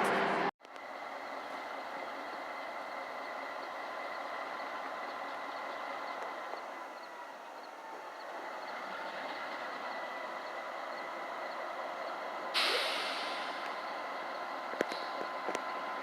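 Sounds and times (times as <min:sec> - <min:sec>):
train rumbling by: 0:00.0 - 0:16.0
faint steady tones: 0:00.6 - 0:12.6
loud air hiss: 0:12.6 - 0:13.8.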